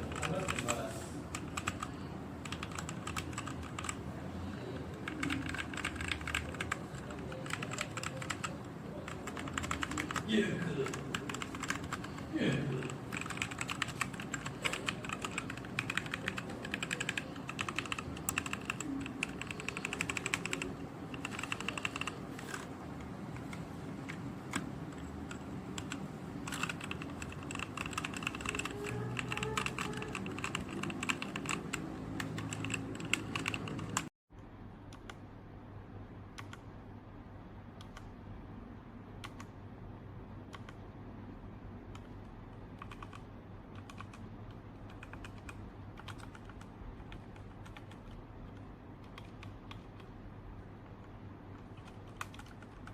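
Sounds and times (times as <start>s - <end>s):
mechanical keyboard key clicks: 25.3s - 34.0s.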